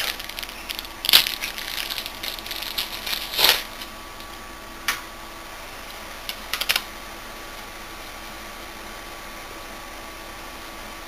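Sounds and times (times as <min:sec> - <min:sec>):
handling rustle: 0:00.0 - 0:04.3.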